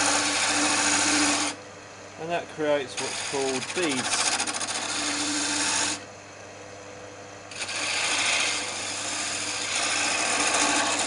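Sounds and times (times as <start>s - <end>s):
gouge scraping spinning wood: 0.0s - 1.6s, 2.6s - 6.0s, 7.5s - 11.0s
lathe motor hum: 0.0s - 1.6s, 2.2s - 6.1s, 7.5s - 11.0s.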